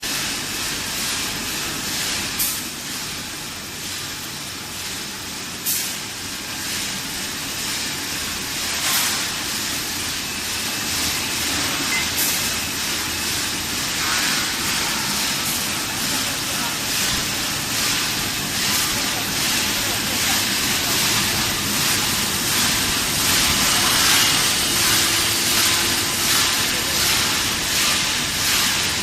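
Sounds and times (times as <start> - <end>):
tube mill mechanical hiss: 0.0 - 29.0.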